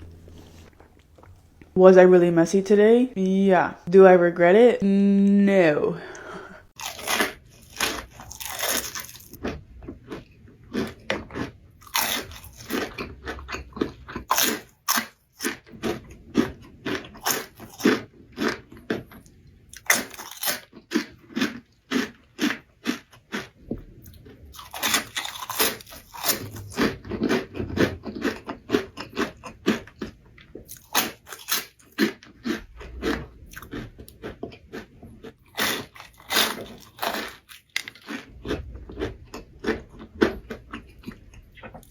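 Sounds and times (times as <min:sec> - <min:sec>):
crunchy chewing: 0:06.7 - 0:41.9.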